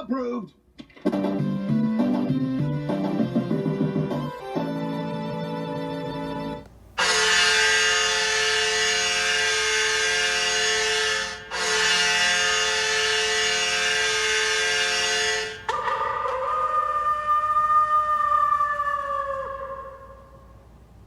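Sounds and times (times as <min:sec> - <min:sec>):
goal horn blasts: 0:06.2 - 0:16.1.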